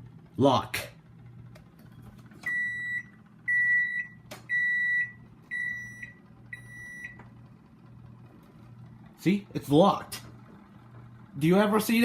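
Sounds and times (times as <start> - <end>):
oven electronic beeps: 2.4 - 7.5.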